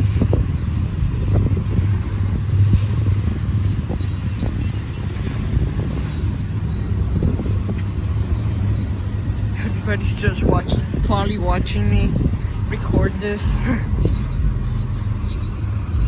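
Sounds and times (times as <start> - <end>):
freight train cars rumbling: 0.0 - 16.0.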